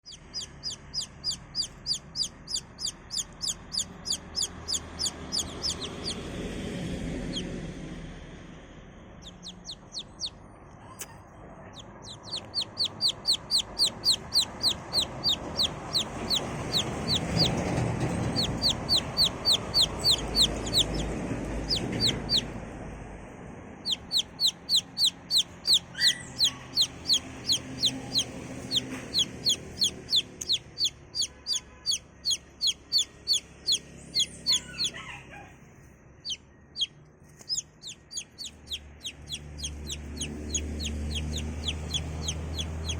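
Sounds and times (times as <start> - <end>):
baby chick peeping: 0.0 - 7.7, 9.2 - 22.7, 23.8 - 42.9.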